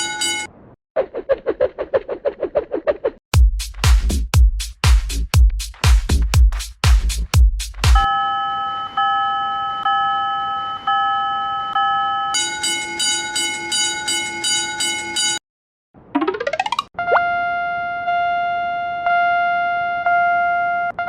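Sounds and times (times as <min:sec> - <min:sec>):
bright crossing bell: 0:00.0 - 0:00.5, 0:08.0 - 0:15.4
lower fast bell: 0:00.0 - 0:00.5, 0:08.0 - 0:15.4.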